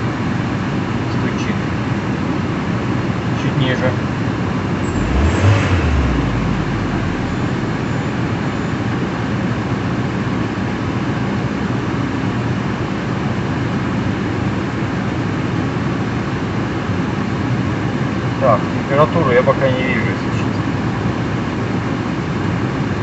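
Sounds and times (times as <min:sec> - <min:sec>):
low rumble: 0:04.8 - 0:09.2.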